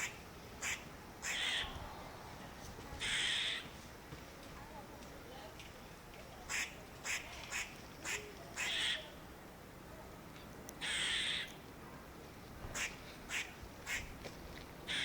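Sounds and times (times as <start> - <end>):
squirrel barking: 0.0 - 1.7, 3.0 - 3.6, 6.5 - 9.2, 10.8 - 11.5
squirrel rasping calls: 0.0 - 1.8, 3.0 - 3.7, 6.5 - 9.2, 10.8 - 11.6, 12.8 - 14.1.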